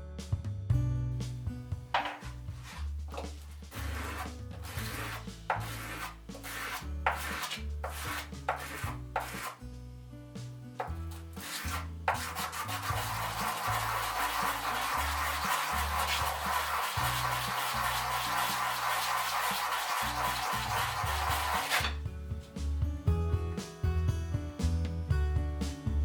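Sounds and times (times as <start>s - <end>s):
background music with bass line: 0.0s - 19.3s, 20.0s - 26.0s
abrasive rasping on wood: 2.0s - 9.6s, 10.8s - 22.0s.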